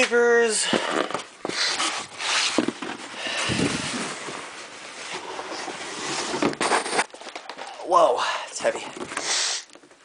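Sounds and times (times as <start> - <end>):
packaging rustling and crinkling: 0.0 - 8.0.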